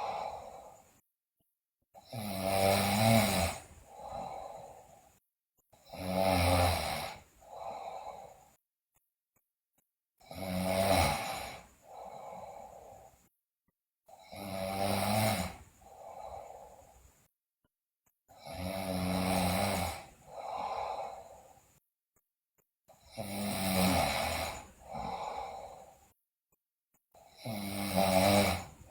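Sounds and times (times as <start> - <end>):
girl snoring loudly: 0.0 - 0.9, 2.0 - 5.0, 5.8 - 8.6, 10.2 - 13.2, 14.2 - 16.9, 18.3 - 21.7, 23.0 - 26.0, 27.2 - 28.9.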